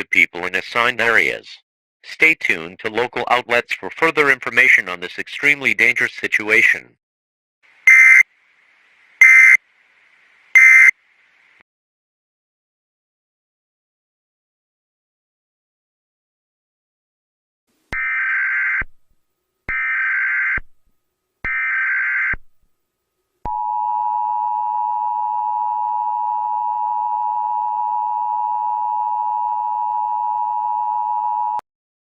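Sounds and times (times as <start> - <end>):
two-tone attention signal: 7.9 - 8.2, 10.6 - 10.9
buzzy digital data tone bursts: 10.5 - 10.9.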